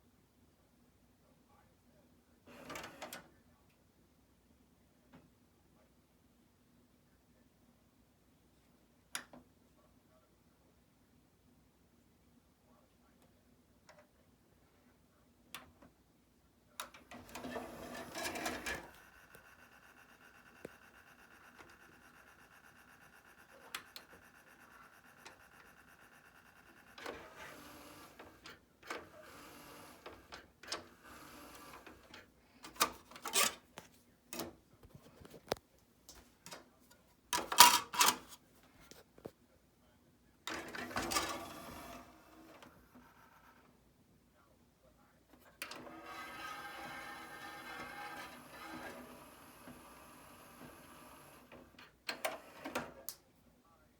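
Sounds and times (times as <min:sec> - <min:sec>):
mechanism clicks and clunks: 0:16.8 - 0:19.0, 0:26.9 - 0:33.8, 0:37.4 - 0:38.4, 0:40.5 - 0:42.7, 0:45.6 - 0:53.2
cd changer motor whirring: 0:17.0 - 0:32.2, 0:45.6 - 0:53.0.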